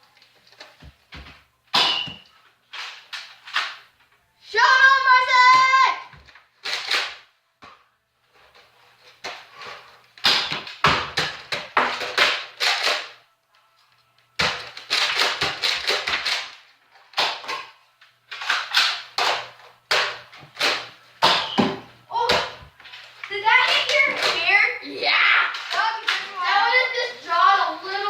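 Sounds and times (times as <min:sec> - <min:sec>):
darts smacking into things: 0:00.8 - 0:03.9, 0:09.2 - 0:13.2, 0:14.4 - 0:22.8.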